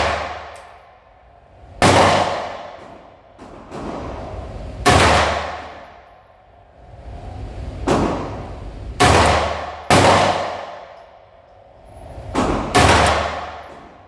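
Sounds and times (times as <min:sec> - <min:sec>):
pistol shots with echo: 0:00.0 - 0:00.8, 0:01.8 - 0:03.8, 0:04.9 - 0:05.9, 0:09.0 - 0:11.0, 0:12.5 - 0:13.8.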